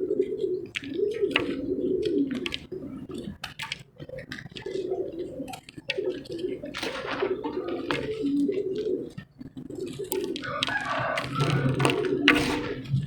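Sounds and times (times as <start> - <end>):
pigeon cooing: 0.0 - 13.0
dry pieces crunching and breaking: 9.8 - 13.0.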